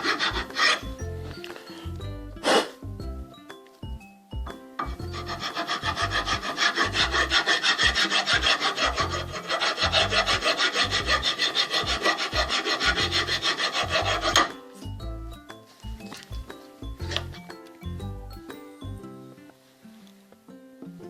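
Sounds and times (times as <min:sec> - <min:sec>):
file rasping on hard surface: 0:00.0 - 0:01.0, 0:04.8 - 0:14.9.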